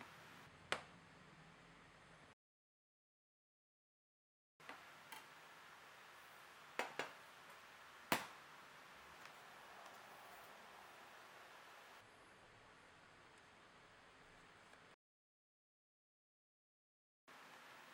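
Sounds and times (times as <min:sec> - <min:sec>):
faint room hiss: 0:00.0 - 0:02.4, 0:04.6 - 0:15.0, 0:17.3 - 0:17.9.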